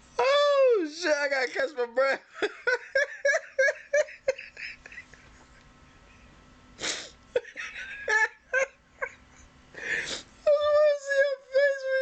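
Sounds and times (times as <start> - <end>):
man laughing breathily: 2.4 - 5.6, 6.8 - 10.2.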